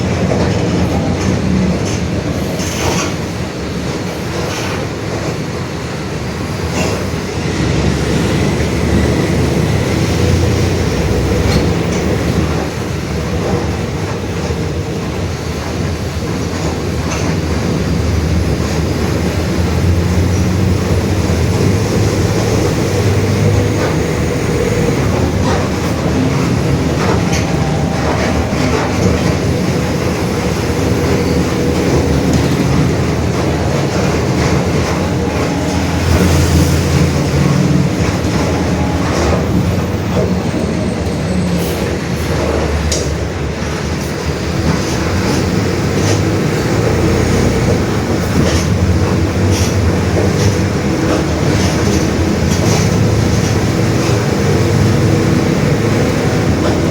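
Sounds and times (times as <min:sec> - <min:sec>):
bus diesel engine running: 0:00.0 - 0:56.9
growling differential: 0:17.2 - 0:41.2.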